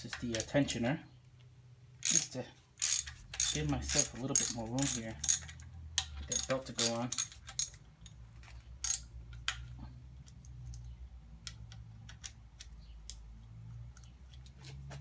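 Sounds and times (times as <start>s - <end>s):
hand tools clicking and tapping: 2.0s - 8.2s.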